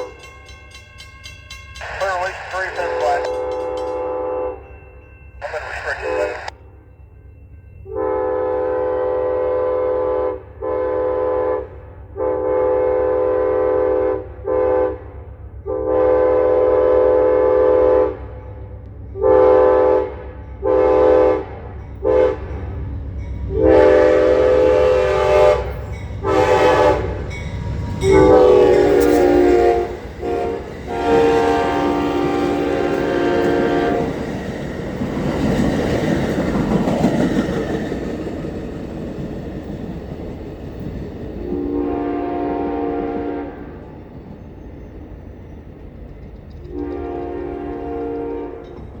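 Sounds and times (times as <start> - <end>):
train engine and wheels clatter: 0.0 - 49.0
locomotive air horn blasts: 7.9 - 15.0, 15.7 - 18.2, 19.2 - 22.5, 23.5 - 27.4, 28.0 - 34.2, 41.4 - 43.8, 46.7 - 48.8.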